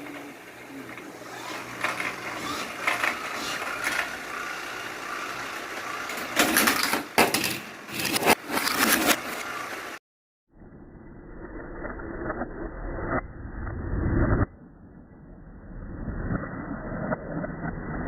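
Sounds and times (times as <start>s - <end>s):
toy cars rolling on plastic track: 0.9s - 10.0s.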